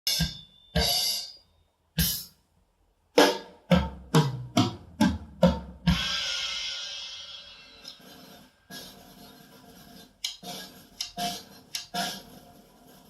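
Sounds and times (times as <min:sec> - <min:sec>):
drum hits: 0:03.2 - 0:07.0.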